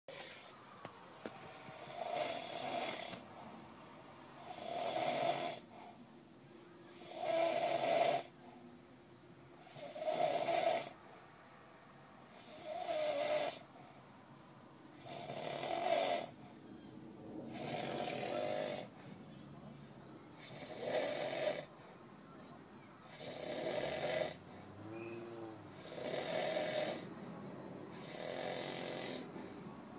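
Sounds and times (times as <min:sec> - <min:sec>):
man snoring: 0:00.1 - 0:00.6, 0:01.8 - 0:03.2, 0:04.4 - 0:05.7, 0:06.9 - 0:08.4, 0:09.6 - 0:11.0, 0:12.3 - 0:13.7, 0:15.0 - 0:16.4, 0:17.5 - 0:19.0, 0:20.4 - 0:21.7, 0:23.1 - 0:24.5, 0:25.3 - 0:27.1, 0:28.0 - 0:29.4.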